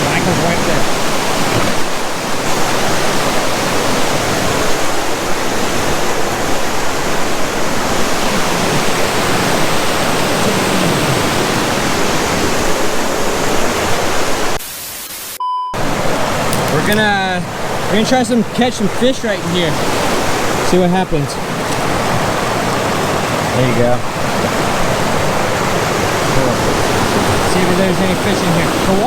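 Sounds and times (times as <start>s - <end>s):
rushing whitewater: 0.0s - 14.6s, 15.8s - 29.0s
short beep-like tone: 15.4s - 15.8s.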